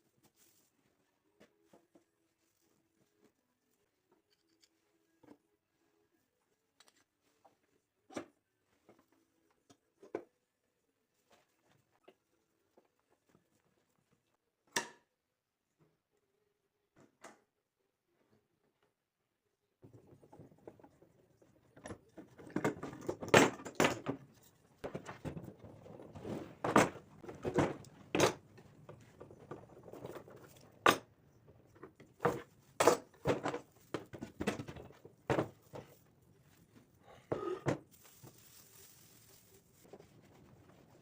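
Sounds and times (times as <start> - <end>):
hard objects knocking and clattering: 21.8 - 36.0.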